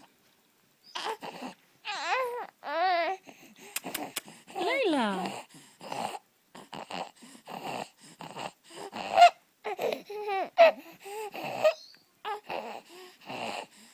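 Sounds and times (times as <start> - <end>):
pitched baby sounds: 0.9 - 5.4
baby breathing noisily: 3.1 - 13.9.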